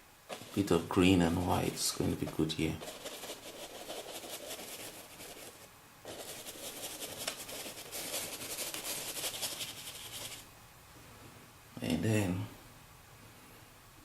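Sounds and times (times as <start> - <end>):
scratchy paint strokes on canvas: 0.3 - 0.8, 1.7 - 10.4.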